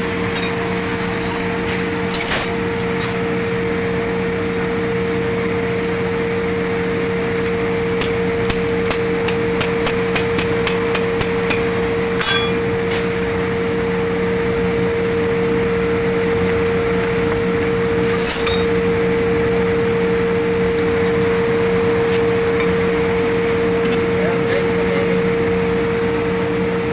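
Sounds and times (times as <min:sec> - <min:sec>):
metallic clinks: 0:00.0 - 0:04.8, 0:08.0 - 0:12.7
steady loud hum: 0:00.0 - 0:26.9
hammer tapping on metal: 0:08.0 - 0:12.6.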